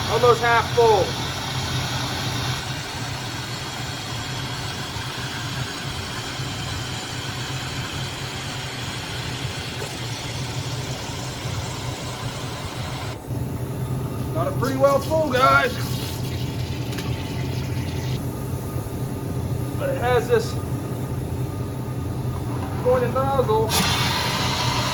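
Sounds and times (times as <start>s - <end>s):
steady low hum: 0.0s - 24.9s
air suction gun hissing: 14.4s - 18.4s, 22.6s - 24.9s.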